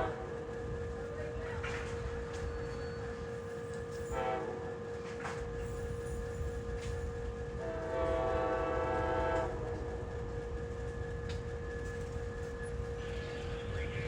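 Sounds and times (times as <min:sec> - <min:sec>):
train horn blast: 0:00.0 - 0:00.4, 0:04.1 - 0:04.8, 0:07.6 - 0:09.8
train rumble and hum: 0:00.0 - 0:14.0.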